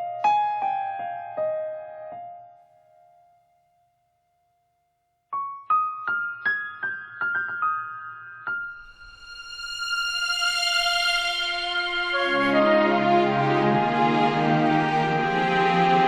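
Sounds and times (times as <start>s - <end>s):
slow piano melody: 0.0s - 16.0s.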